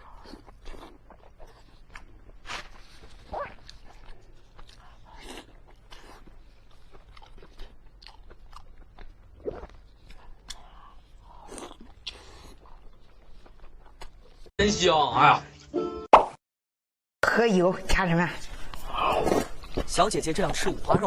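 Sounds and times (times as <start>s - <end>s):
person chewing food: 0.0s - 14.5s, 18.6s - 19.9s.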